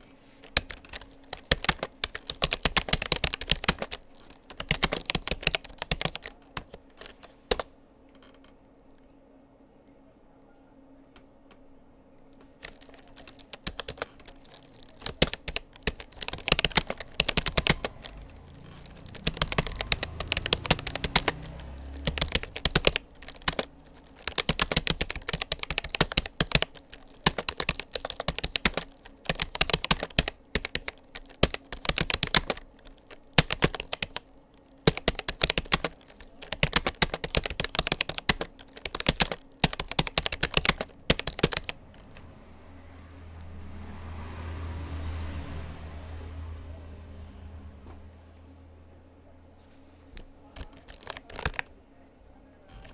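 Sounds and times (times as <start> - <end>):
keyboard typing clicks: 0.5 - 9.1, 12.2 - 42.2, 50.2 - 51.7.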